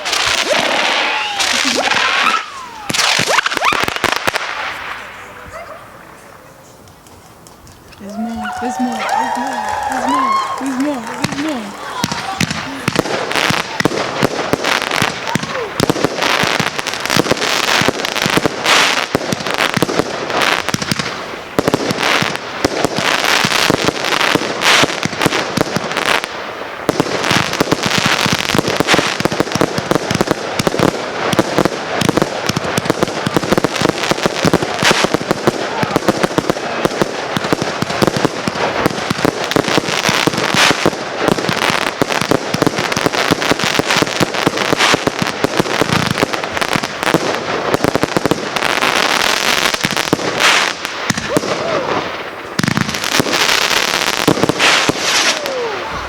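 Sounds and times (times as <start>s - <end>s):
fireworks launching and crackling: 0.0s - 56.0s.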